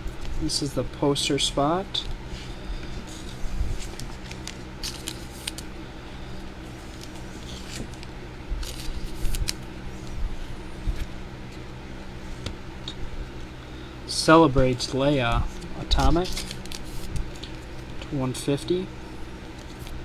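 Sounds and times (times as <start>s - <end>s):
steady low hum: 0.0s - 20.0s
trading cards handled by hand: 1.9s - 5.8s, 6.4s - 11.6s, 14.6s - 18.4s, 19.3s - 20.0s.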